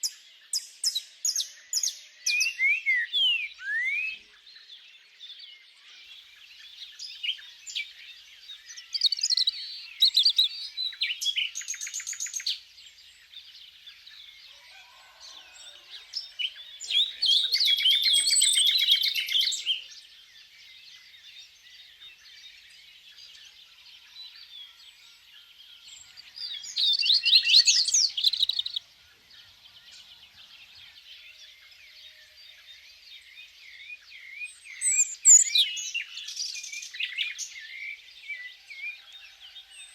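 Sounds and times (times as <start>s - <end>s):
bird song trill: 0.0s - 39.9s
songbirds chirping: 0.0s - 39.9s.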